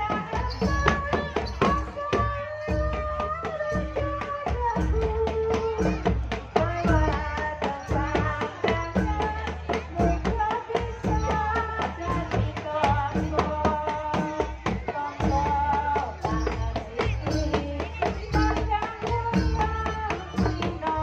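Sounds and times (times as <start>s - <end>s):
rapid hand drum strokes: 0.0s - 21.0s.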